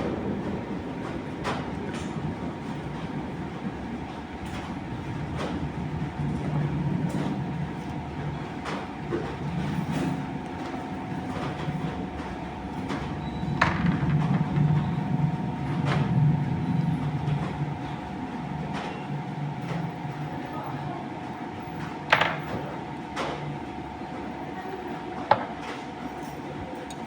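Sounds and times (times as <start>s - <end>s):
milking machine humming: 0.0s - 27.0s.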